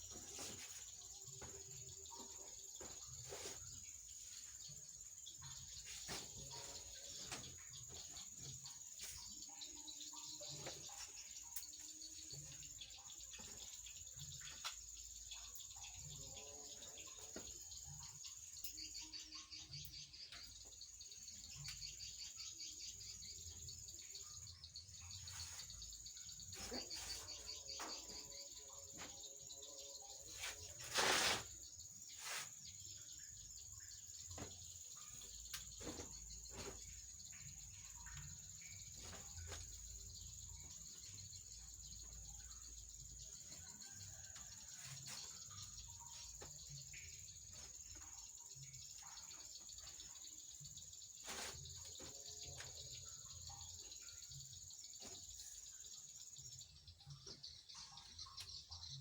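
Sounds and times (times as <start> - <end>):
light knocks and rustles: 0.0 - 4.8, 5.4 - 9.4, 25.1 - 33.5, 34.2 - 41.2
insects droning: 0.0 - 59.0.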